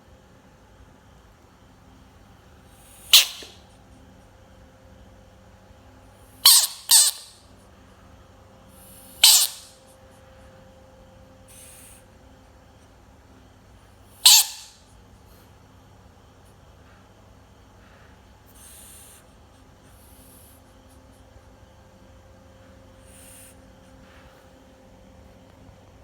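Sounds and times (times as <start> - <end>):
frog squawking calls: 3.0 - 3.6, 6.4 - 7.4, 9.1 - 9.8, 14.2 - 14.8.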